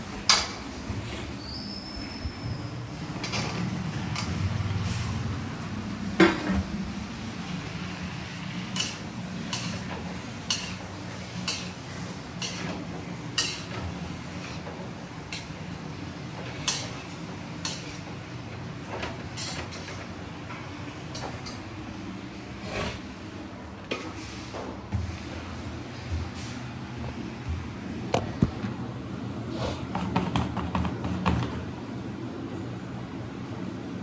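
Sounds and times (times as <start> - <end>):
metal utensil clinking on cookware: 8.8 - 11.8, 12.4 - 12.7, 13.4 - 13.7, 16.6 - 17.0, 17.7 - 18.0.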